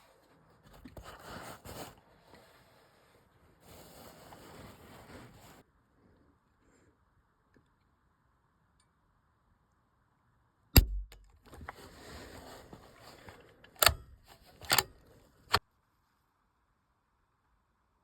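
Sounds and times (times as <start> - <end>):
rustling: 0.0 - 5.6
sharp loud snap: 10.8 - 11.3
rifle action metallic clacks: 10.8 - 11.6, 13.7 - 15.6.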